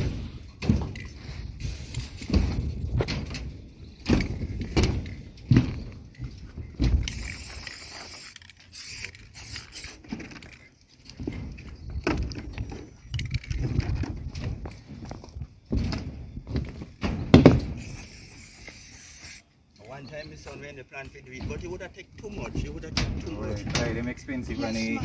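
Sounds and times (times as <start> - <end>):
knocking thuds: 0.0 - 1.2, 2.2 - 7.3, 11.1 - 18.0, 20.4 - 25.0
footsteps: 0.0 - 25.0.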